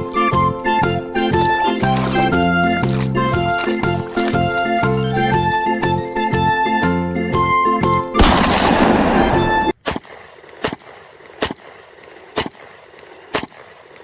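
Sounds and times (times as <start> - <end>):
background music: 0.0 - 9.7
toy gun shots: 13.3 - 13.7.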